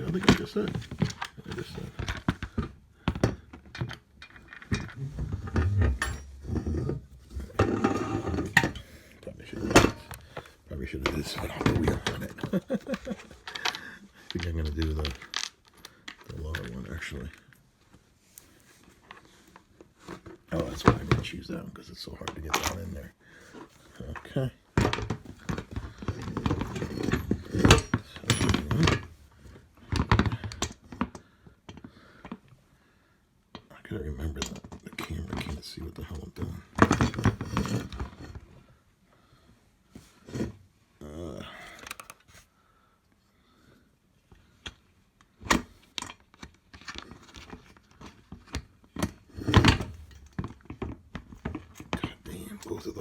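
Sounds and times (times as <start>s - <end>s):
clicks and rattles of parts handled: 0.0s - 17.7s, 22.2s - 32.6s, 34.3s - 35.7s, 36.4s - 38.5s, 41.5s - 42.5s, 44.6s - 53.0s
metal parts clicking and clattering: 3.6s - 8.9s, 9.6s - 17.4s, 24.1s - 29.2s, 41.7s - 42.4s.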